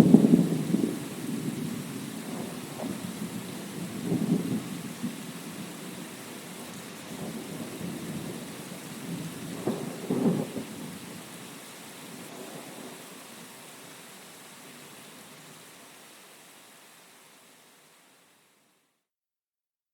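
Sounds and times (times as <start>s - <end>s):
rolling thunder: 0.0s - 6.0s, 6.6s - 11.2s
heavy rain hissing: 0.0s - 18.9s.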